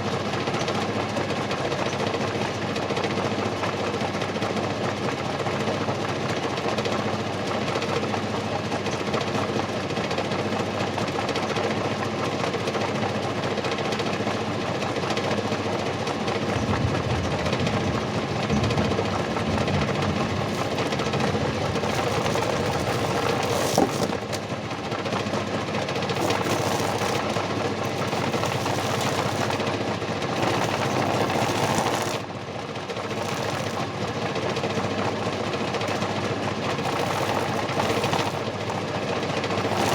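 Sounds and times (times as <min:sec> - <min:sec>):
motor humming with rattle: 0:16.4 - 0:39.9.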